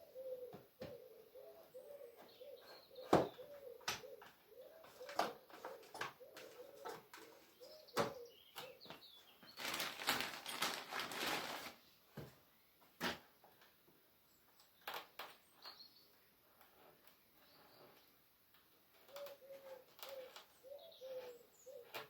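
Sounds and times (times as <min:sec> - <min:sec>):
dove cooing: 0:00.0 - 0:08.8, 0:19.0 - 0:22.0.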